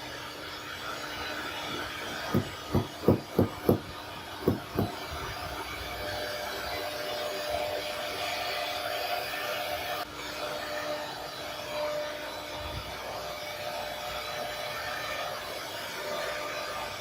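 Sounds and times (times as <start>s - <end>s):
steady machine hum: 1.6s - 7.5s
heavy low thumps: 2.3s - 5.0s.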